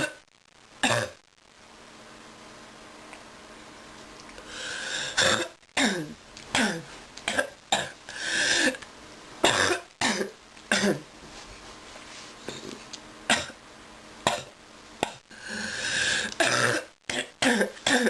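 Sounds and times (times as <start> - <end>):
person coughing: 0.0 - 0.2, 5.1 - 8.8, 9.5 - 11.0, 16.3 - 18.0.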